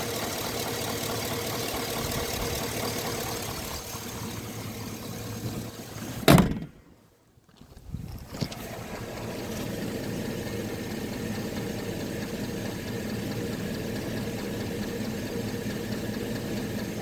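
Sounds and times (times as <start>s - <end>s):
engine knocking: 0.0s - 5.9s, 8.7s - 17.0s
car engine idling: 0.0s - 6.4s, 8.5s - 17.0s.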